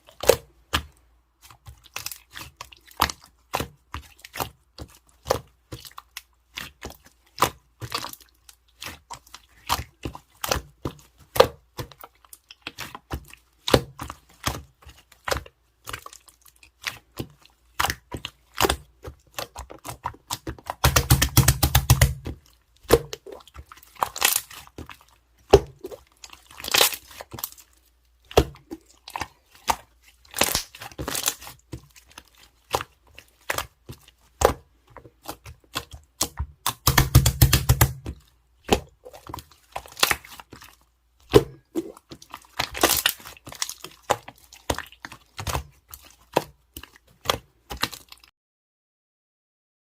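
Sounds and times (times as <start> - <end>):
slime clicks and crackles: 28.3 - 31.8.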